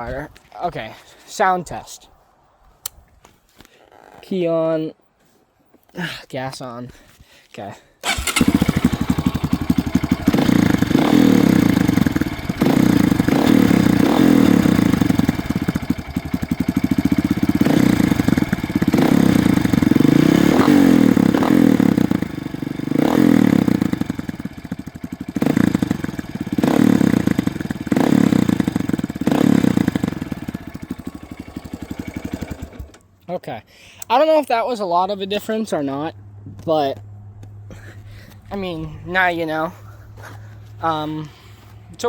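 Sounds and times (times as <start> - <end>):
motorcycle engine revving: 8.0 - 33.0.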